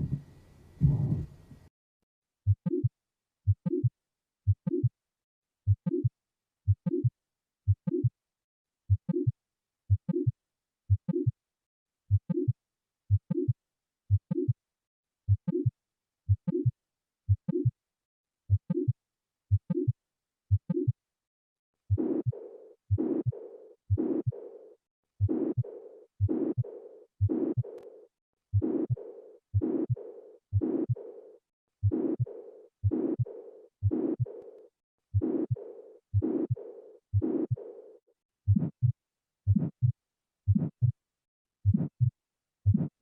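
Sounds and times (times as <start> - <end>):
heartbeat with murmur: 0.0 - 1.4, 3.5 - 3.9, 4.5 - 4.9, 5.7 - 6.1, 6.7 - 7.1, 7.7 - 8.1, 8.9 - 9.3, 9.9 - 10.3, 10.9 - 11.3, 12.1 - 14.6, 15.3 - 15.7, 16.3 - 16.7, 17.3 - 17.7, 18.5 - 21.0, 21.9 - 24.6, 25.2 - 27.8, 28.5 - 31.2, 31.8 - 34.5, 35.1 - 37.8, 38.5 - 41.0, 41.6 - 43.0
hazy recorded sound: 0.0 - 1.7.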